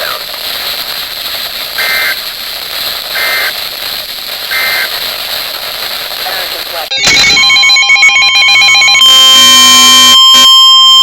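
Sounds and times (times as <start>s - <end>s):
radio hiss: 0.0s - 0.4s, 1.6s - 5.2s, 5.9s - 6.9s
warbling data bursts: 1.7s - 2.4s, 3.1s - 3.7s, 4.5s - 10.2s.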